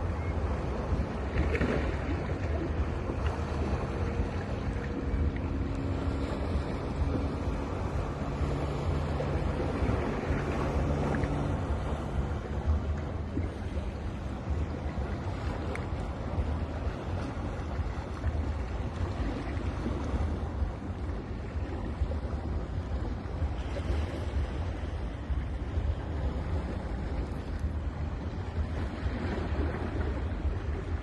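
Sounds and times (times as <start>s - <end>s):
surf washing onto beach: 0.0s - 31.0s
wind buffeting microphone: 0.0s - 31.0s.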